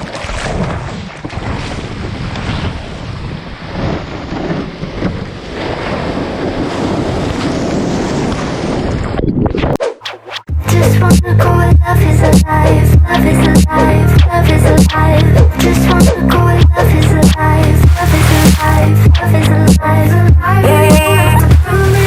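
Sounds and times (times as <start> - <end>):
wind buffeting microphone: 0.4 - 9.8
ocean surf breaking: 2.0 - 9.2, 17.3 - 19.7, 20.7 - 22.0.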